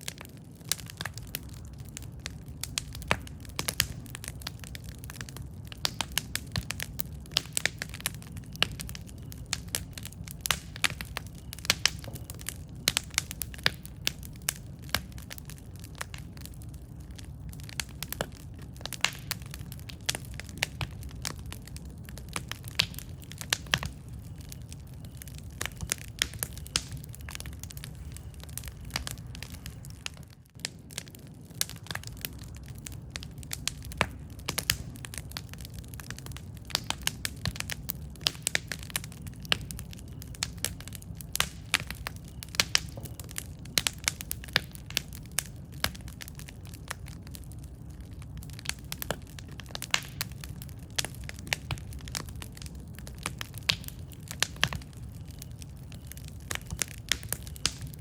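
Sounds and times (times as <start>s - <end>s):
campfire crackling and popping: 0.0s - 58.0s.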